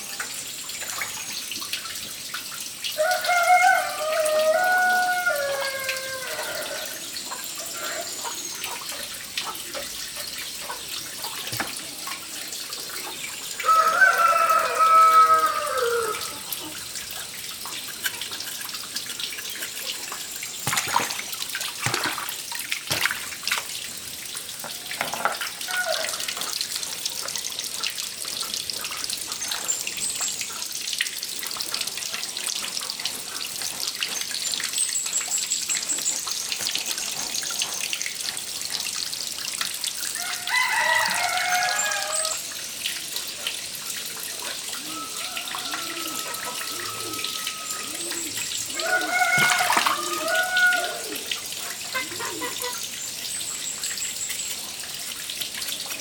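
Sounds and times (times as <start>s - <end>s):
tap water splashing: 10.6s - 13.8s, 17.6s - 29.0s, 48.1s - 52.5s
small knocks and clatters: 24.6s - 25.6s
chicken calling: 44.8s - 51.3s, 51.9s - 52.8s.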